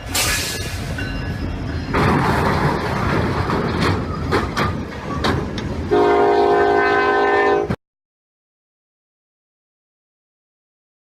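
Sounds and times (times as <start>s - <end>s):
train rumbling on rails: 0.0s - 7.8s
multi-note train horn: 5.9s - 7.8s.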